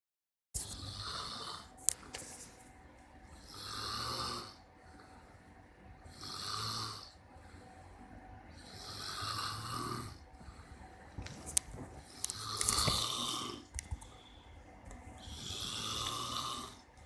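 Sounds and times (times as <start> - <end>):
man snoring: 0.7 - 1.7, 3.4 - 4.6, 6.1 - 7.2, 8.5 - 10.3, 12.0 - 13.7, 15.2 - 16.9.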